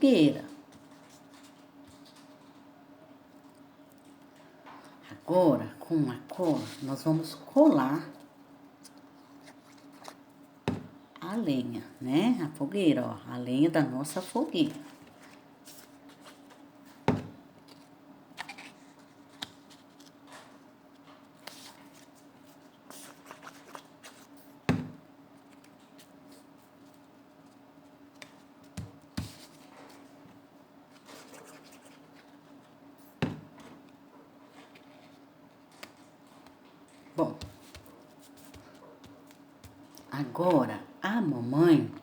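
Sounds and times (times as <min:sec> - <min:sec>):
faint steady hum: 0:00.0 - 0:42.0
paper rustling: 0:14.8 - 0:24.5.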